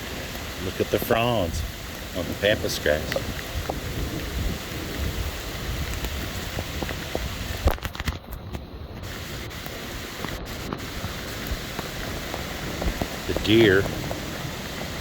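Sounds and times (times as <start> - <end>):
rain drops tapping on microphone: 0.0 - 15.0.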